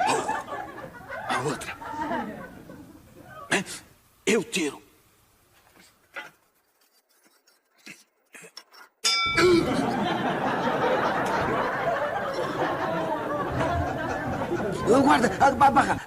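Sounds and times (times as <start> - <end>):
studio audience laughing: 0.0 - 3.2, 9.6 - 16.0
metallic clink: 9.0 - 9.6.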